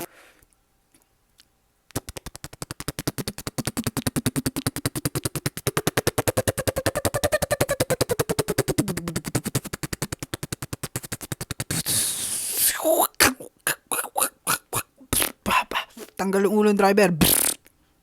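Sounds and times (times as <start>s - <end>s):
man making pulsing buzz with mouth: 1.9s - 16.2s, 17.2s - 17.7s
mouth-made hiss: 11.6s - 16.2s.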